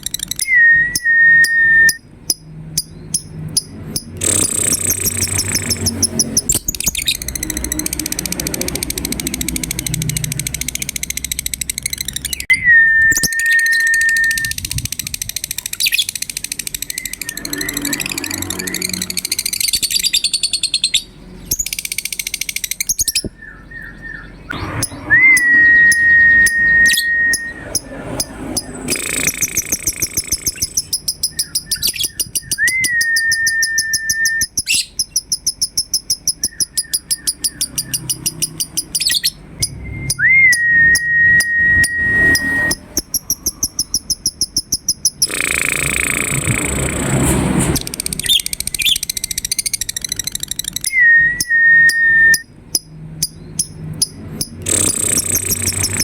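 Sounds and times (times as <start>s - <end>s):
lovebird chattering chirps: 0.0s - 12.5s, 13.2s - 46.8s, 47.8s - 56.0s
long rising whistled note: 24.8s - 28.0s, 39.7s - 42.9s.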